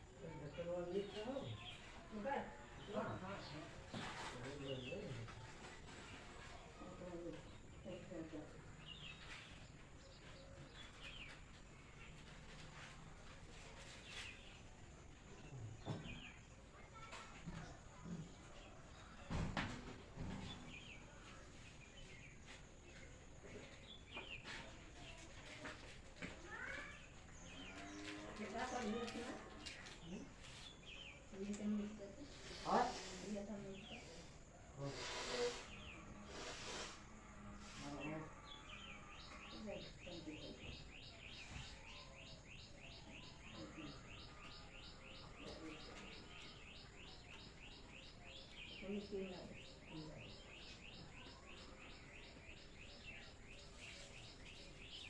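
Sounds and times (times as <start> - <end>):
faint bird chirps: 26.5 - 55.0.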